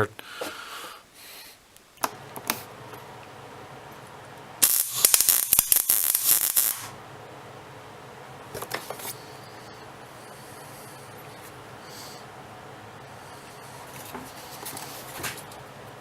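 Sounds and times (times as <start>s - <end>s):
crackling welding arc: 4.6s - 7.0s.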